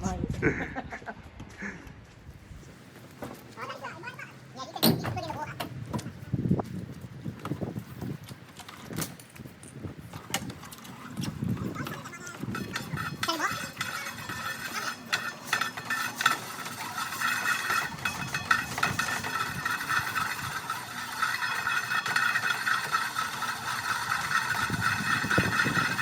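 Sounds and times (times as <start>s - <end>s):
engine running with rattle: 6.7s - 26.0s.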